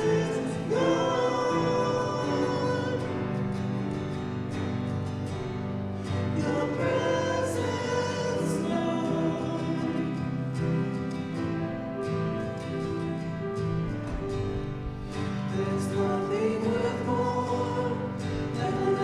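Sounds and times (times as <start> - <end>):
people singing: 0.0 - 4.8, 5.9 - 11.5, 15.1 - 19.0
guitar: 0.0 - 19.0.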